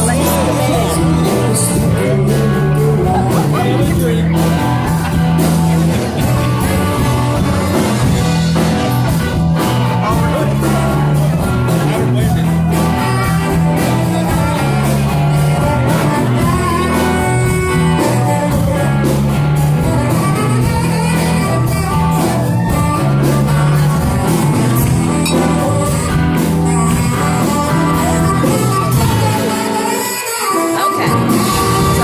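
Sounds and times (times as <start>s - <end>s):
bass line: 0.0s - 32.0s
drums: 0.0s - 32.0s
electric guitar: 0.0s - 32.0s
person singing: 0.0s - 32.0s.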